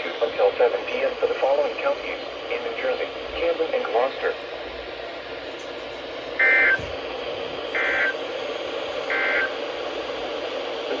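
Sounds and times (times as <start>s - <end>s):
radio static hiss: 0.0s - 11.0s
digital data tone bursts: 6.4s - 6.8s, 7.8s - 8.2s, 9.1s - 9.5s.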